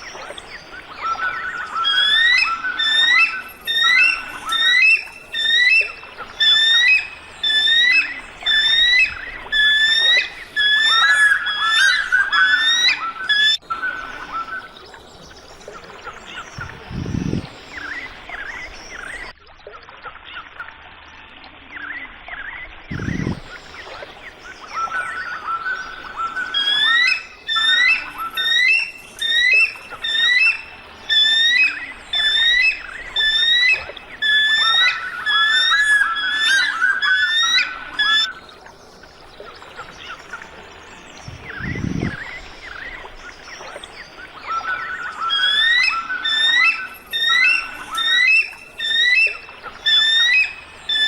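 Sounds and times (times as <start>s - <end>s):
bird whistling calls: 0.8s - 14.8s, 16.3s - 19.3s, 22.9s - 38.4s, 41.2s - 51.0s
soft bird chirps: 22.6s - 51.0s
outdoor background hiss: 23.0s - 51.0s.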